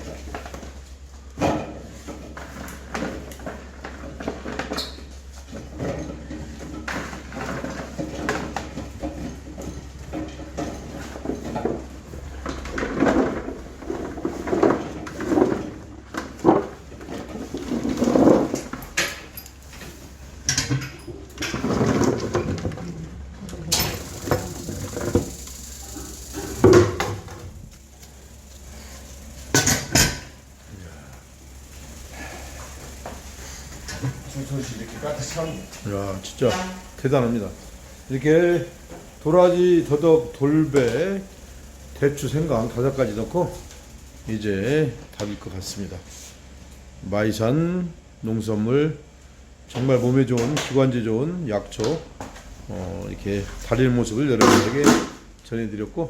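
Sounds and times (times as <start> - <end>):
knocks and clatter of handling: 0.0 - 30.6
steady low hum: 0.0 - 56.0.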